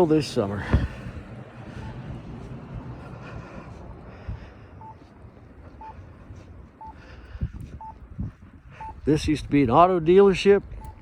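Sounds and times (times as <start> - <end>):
wind noise on microphone: 0.6 - 11.0
short electronic beeps: 1.8 - 2.0, 4.8 - 5.0, 5.8 - 6.0, 6.8 - 7.0, 7.8 - 8.0, 8.8 - 9.0, 10.7 - 11.0.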